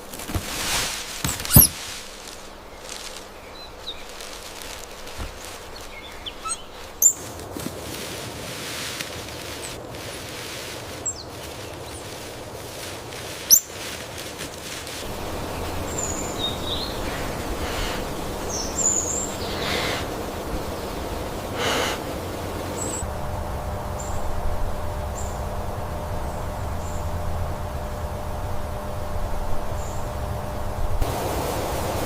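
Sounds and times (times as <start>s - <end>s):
outdoor background noise: 0.0s - 32.0s
high-pitched bird chirps: 6.1s - 7.2s.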